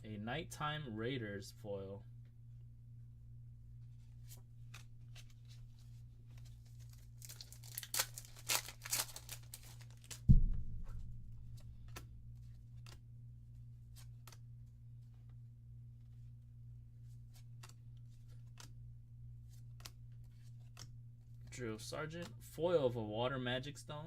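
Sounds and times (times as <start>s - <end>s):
wrapper tearing and crinkling: 6.7s - 10.3s
heavy thump: 10.3s - 11.8s.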